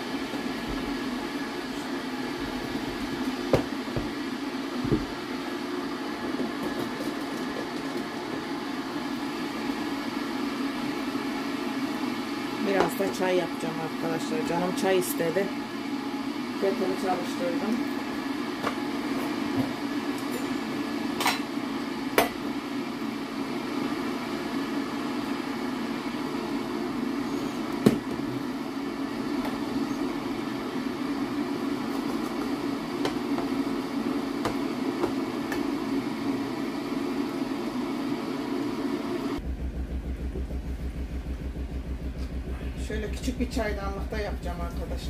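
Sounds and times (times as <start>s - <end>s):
electric kettle rumbling hiss: 0.0s - 45.0s
low pulsing hum: 39.4s - 45.0s.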